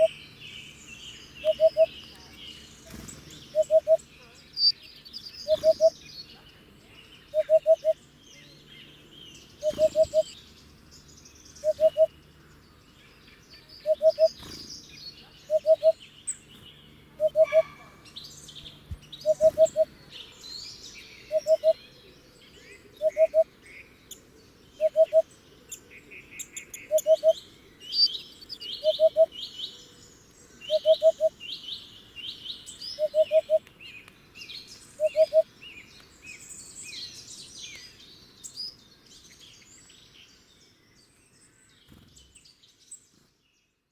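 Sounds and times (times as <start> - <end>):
small birds chirping and trilling: 0.0 - 43.9
hoopoe hooting song: 1.4 - 1.9, 7.4 - 8.0, 11.6 - 12.1, 17.2 - 17.9, 19.2 - 19.9, 21.3 - 21.8, 23.0 - 23.4, 24.8 - 25.2, 28.7 - 29.4.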